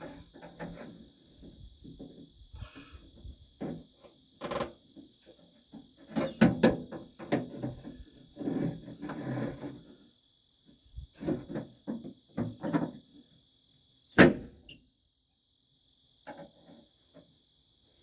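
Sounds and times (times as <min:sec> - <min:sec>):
rough metal scraping: 0:08.4 - 0:09.9.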